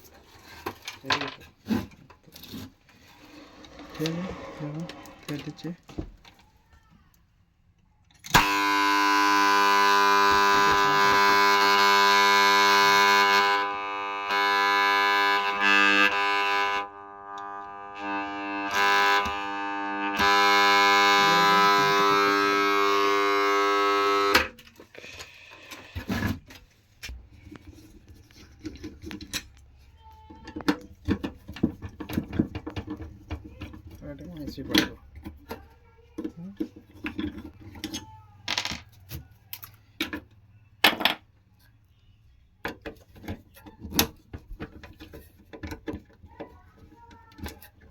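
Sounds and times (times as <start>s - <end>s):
loud electrical buzz: 8.3s - 24.5s.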